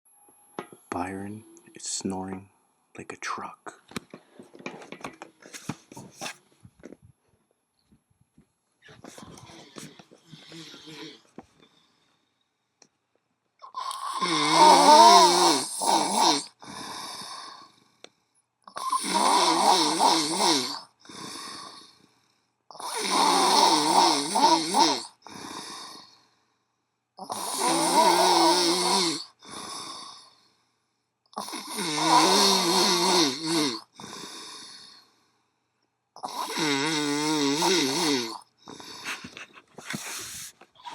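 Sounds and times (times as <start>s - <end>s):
soft breath: 8.8s - 12.5s, 38.6s - 40.9s
person snoring loudly: 9.0s - 11.2s, 13.6s - 17.8s, 18.7s - 22.0s, 22.7s - 26.2s, 27.2s - 30.4s, 31.4s - 35.1s, 36.2s - 40.9s.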